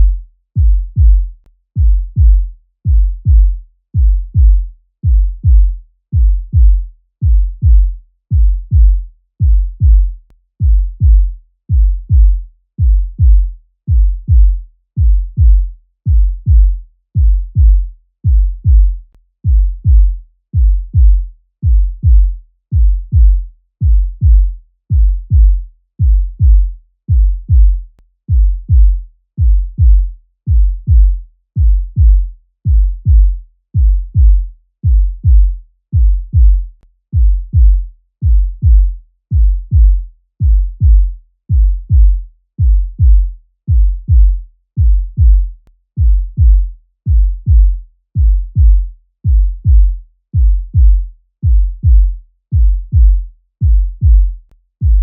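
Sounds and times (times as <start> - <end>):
heartbeat thumps: 0.0 - 55.0.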